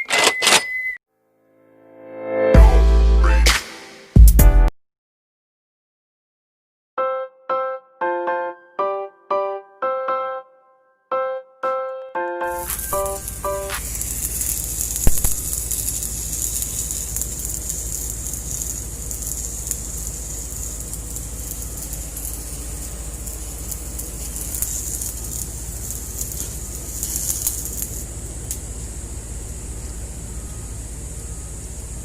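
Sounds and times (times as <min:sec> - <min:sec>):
sharp click: 0:00.0 - 0:00.8, 0:15.1 - 0:15.5
arc welding hiss and crackle: 0:12.5 - 0:32.0
low hum: 0:12.5 - 0:32.0.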